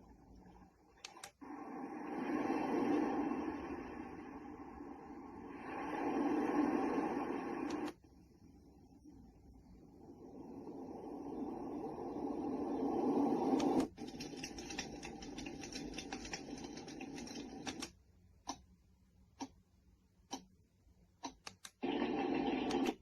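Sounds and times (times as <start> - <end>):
sharp clicks: 1.0 - 1.4, 21.2 - 21.8
noisy sound with fast ticks: 5.6 - 8.0, 13.1 - 18.6, 21.2 - 23.0.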